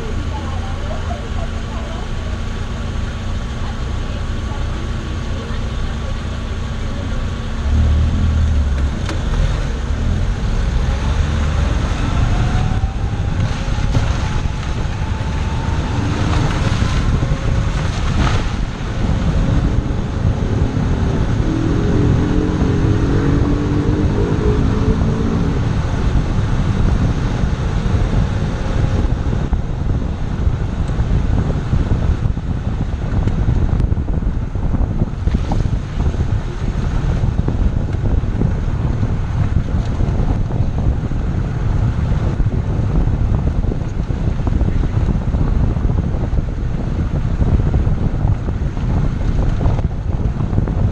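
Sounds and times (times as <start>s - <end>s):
car engine running: 0.0s - 50.9s
road noise: 0.0s - 50.9s
wind on microphone: 2.3s - 50.9s.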